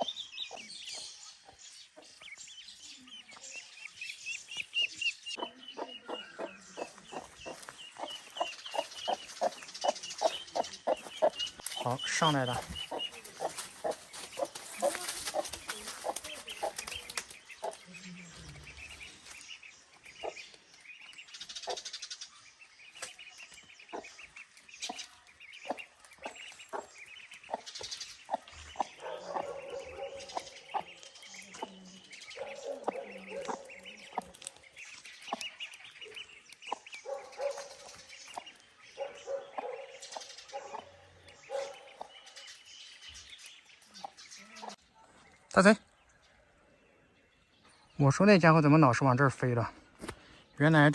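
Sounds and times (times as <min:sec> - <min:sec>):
hen clucking: 0:00.0 - 0:00.7, 0:04.8 - 0:19.0, 0:24.8 - 0:34.4
ducklings peeping: 0:00.0 - 0:44.8.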